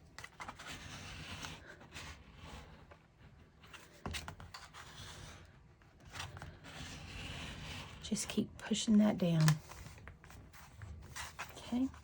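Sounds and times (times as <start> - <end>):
tool scraping on paper: 0.4 - 3.8, 4.6 - 8.4.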